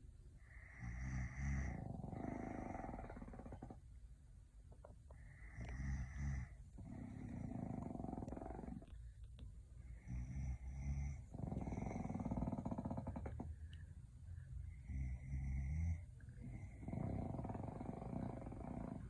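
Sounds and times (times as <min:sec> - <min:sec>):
pet snoring: 0:00.5 - 0:03.9, 0:05.2 - 0:09.0, 0:09.9 - 0:13.6, 0:14.7 - 0:19.0.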